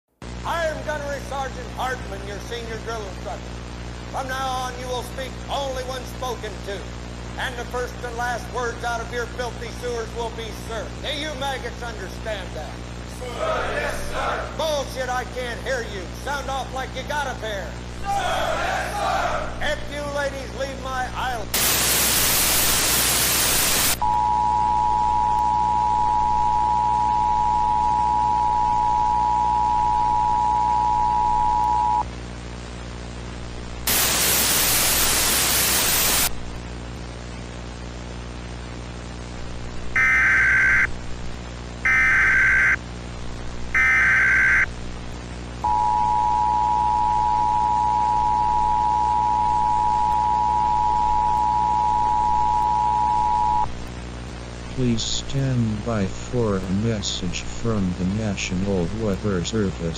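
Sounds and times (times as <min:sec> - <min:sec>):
static bursts: 0:09.7 - 0:24.0, 0:31.8 - 0:45.6
low hum: 0:17.8 - 0:59.9.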